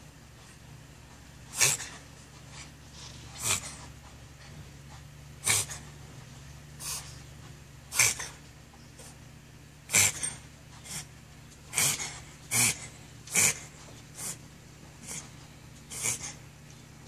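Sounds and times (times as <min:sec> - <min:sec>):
dog coughing: 0:01.5 - 0:02.0, 0:05.4 - 0:05.8, 0:07.9 - 0:08.4, 0:09.9 - 0:11.1, 0:11.7 - 0:14.4, 0:15.9 - 0:16.4.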